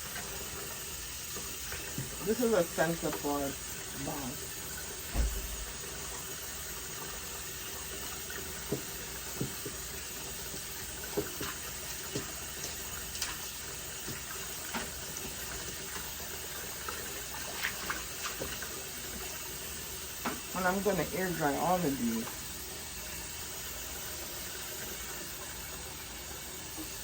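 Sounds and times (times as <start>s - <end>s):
tap water running into sink: 0.0s - 27.0s
light knocks and splashes: 5.1s - 5.8s.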